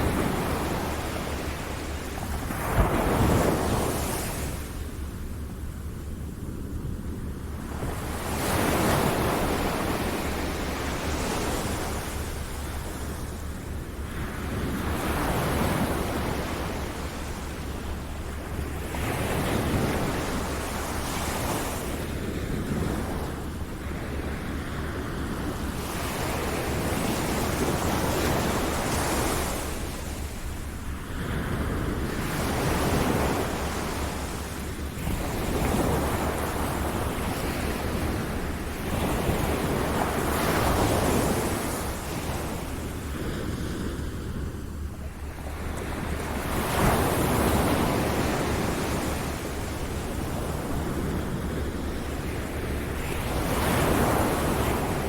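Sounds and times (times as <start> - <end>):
ocean waves breaking: 0.0 - 5.1.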